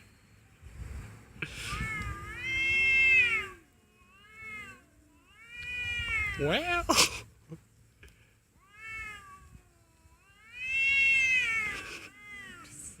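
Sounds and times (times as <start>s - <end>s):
cats yowling: 1.7s - 6.8s, 8.6s - 12.9s.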